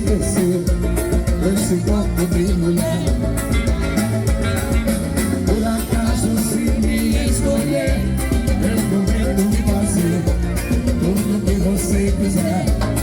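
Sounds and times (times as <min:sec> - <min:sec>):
latin dance music: 0:00.0 - 0:13.0.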